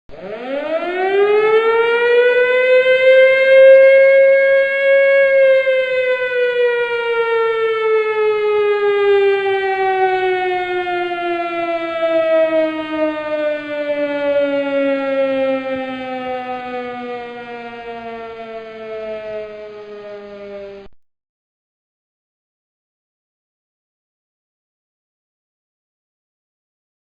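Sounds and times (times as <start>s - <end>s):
air-raid siren wailing: 0.1s - 20.9s.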